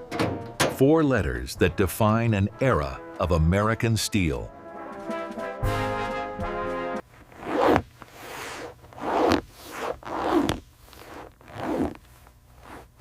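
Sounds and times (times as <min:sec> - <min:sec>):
brass chord in music: 0:01.6 - 0:07.0.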